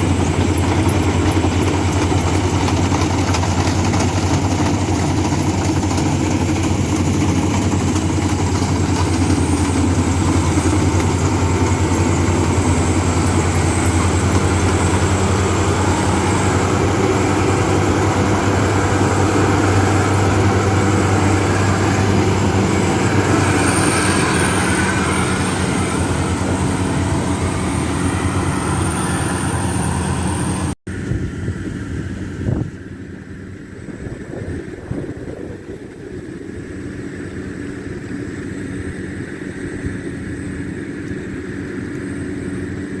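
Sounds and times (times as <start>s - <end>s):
large engine humming: 0.0s - 43.0s
wind: 0.0s - 43.0s.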